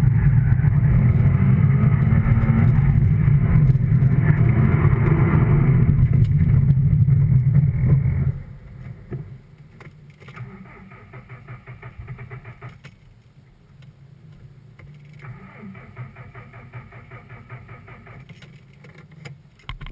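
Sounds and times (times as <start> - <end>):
low hum: 0.0 - 18.2
engine starter cranking: 10.2 - 12.9, 15.1 - 18.7.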